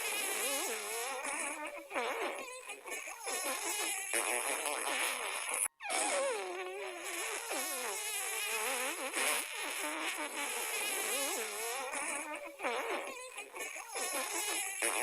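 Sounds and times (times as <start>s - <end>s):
cartoon fart sound effects: 0.0s - 15.0s.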